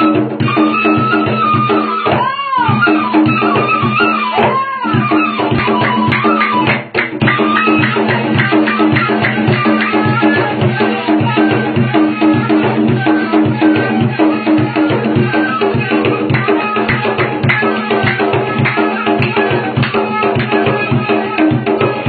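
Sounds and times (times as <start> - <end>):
reed flute melody: 0.0 - 11.7
fast drum rhythm: 0.0 - 22.0.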